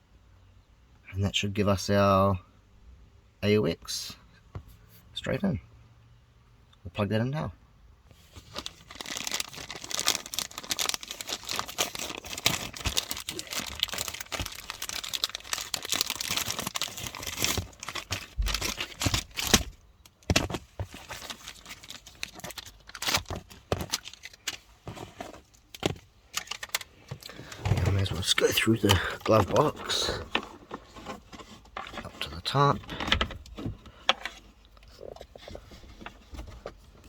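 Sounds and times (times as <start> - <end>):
plastic and wiring rustling: 8.1 - 37.0.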